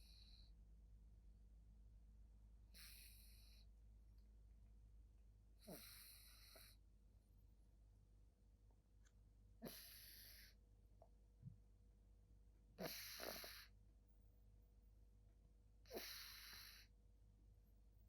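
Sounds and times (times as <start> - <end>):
kitten snoring softly: 0.0 - 0.7, 2.7 - 3.9, 5.6 - 6.9, 9.6 - 10.6, 12.8 - 13.8, 15.8 - 17.0.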